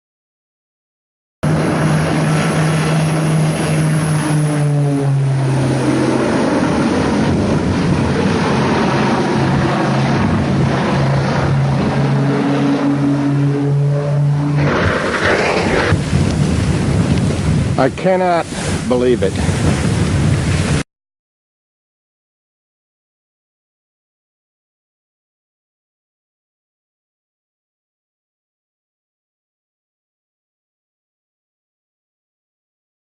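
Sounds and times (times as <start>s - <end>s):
loud rushing noise: 1.4s - 20.8s
propeller aircraft engine: 1.4s - 20.8s.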